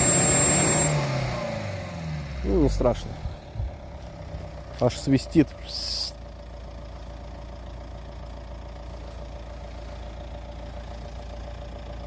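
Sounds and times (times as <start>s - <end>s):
whistle over engine rumble: 0.0s - 2.7s
car engine idling: 0.0s - 12.0s.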